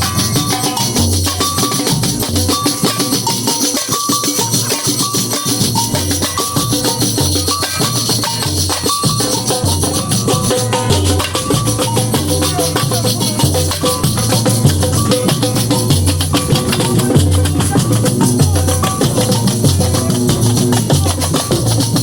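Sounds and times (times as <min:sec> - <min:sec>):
rattle of shakers and jingles: 0:00.0 - 0:22.0
deep bass drum beats: 0:05.6 - 0:22.0.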